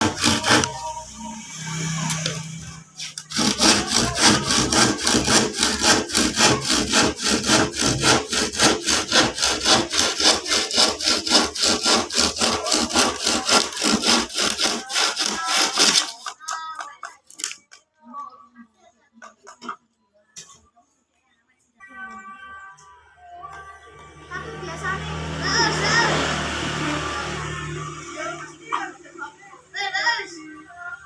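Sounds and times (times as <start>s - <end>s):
hand saw cutting wood: 0.0s - 1.0s, 3.0s - 16.4s, 25.7s - 28.0s.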